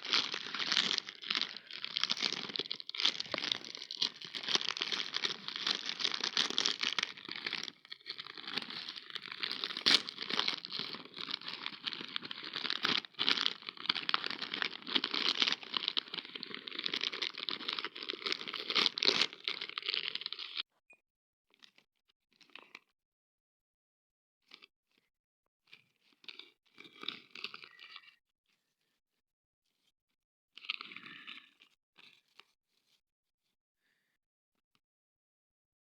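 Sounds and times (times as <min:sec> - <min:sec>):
faint crunches: 0:00.0 - 0:20.6
plastic snack packet crinkling: 0:00.0 - 0:20.6.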